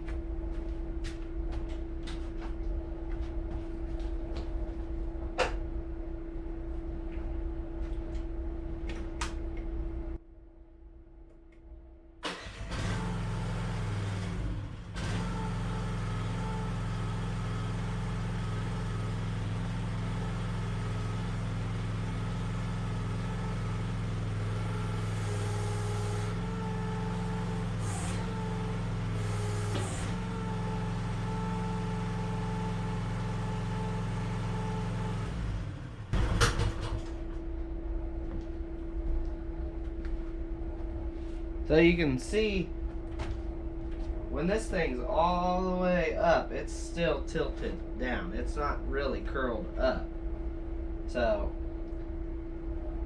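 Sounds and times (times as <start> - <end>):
hydraulics working: 12.2 - 37.5
excavator engine running: 12.2 - 45.9.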